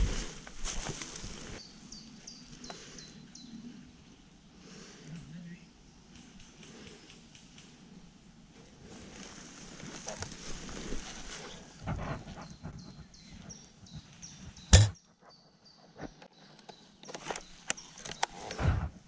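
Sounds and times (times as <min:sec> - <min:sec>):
rustling and handling noise: 0:00.0 - 0:01.6, 0:08.8 - 0:14.9.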